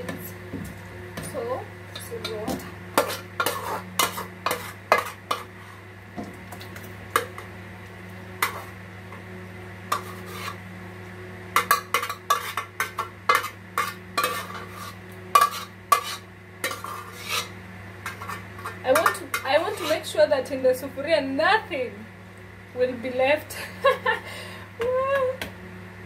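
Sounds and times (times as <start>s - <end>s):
steady low hum: 0.0s - 26.0s
metal spoon scraping a pot: 2.0s - 5.8s, 8.4s - 8.8s, 9.9s - 10.6s, 11.6s - 20.2s.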